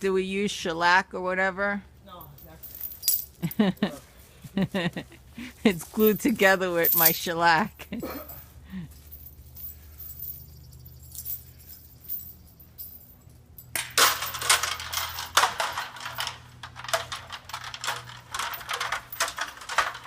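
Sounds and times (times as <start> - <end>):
hand winch ratcheting: 13.8 - 20.0.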